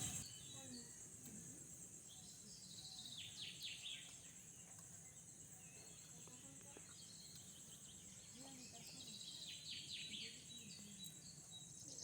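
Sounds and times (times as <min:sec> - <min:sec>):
bird chirping: 0:00.0 - 0:00.6
insect-like hiss: 0:00.0 - 0:02.4.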